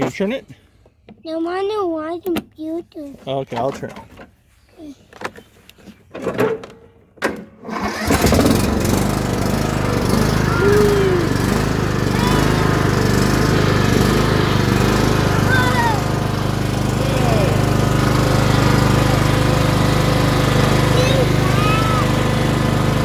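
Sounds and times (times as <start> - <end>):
riding mower engine starting: 7.3 - 23.0
riding mower engine running: 7.6 - 23.0.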